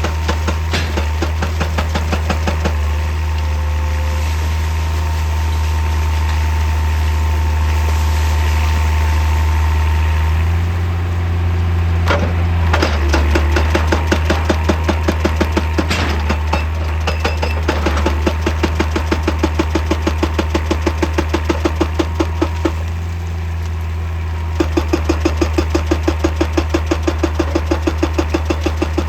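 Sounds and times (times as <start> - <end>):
hydraulic breaker hammering rock: 0.0 - 3.8, 12.0 - 23.2, 24.4 - 29.0
excavator engine running: 0.0 - 29.0.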